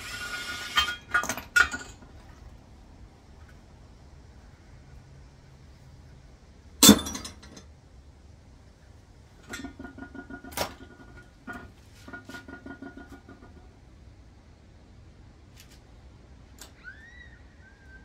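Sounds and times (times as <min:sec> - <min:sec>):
loud metallic clank: 0:06.8 - 0:07.6.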